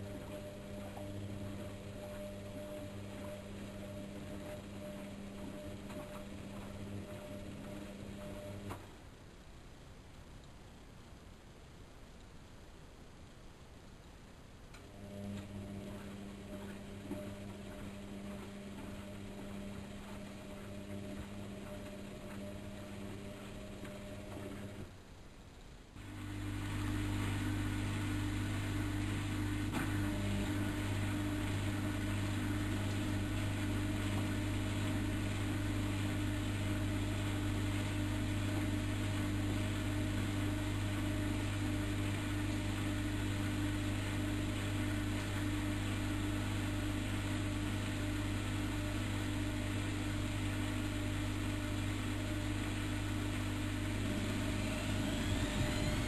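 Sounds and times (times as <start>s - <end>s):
motor whine: 0.0s - 8.8s, 14.8s - 24.9s, 26.0s - 56.0s
washing machine motor humming: 0.0s - 9.1s, 14.6s - 56.0s.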